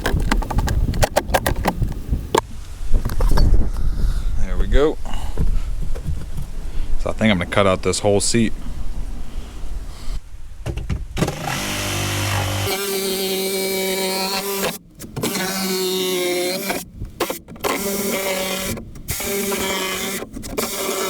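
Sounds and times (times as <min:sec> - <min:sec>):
power tool cutting fiberglass: 0:11.2 - 0:21.0.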